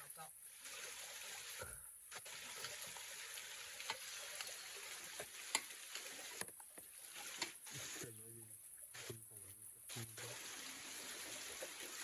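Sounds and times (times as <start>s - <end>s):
steady hiss: 0.0s - 12.0s
sharp clicks and pops: 5.2s - 7.6s.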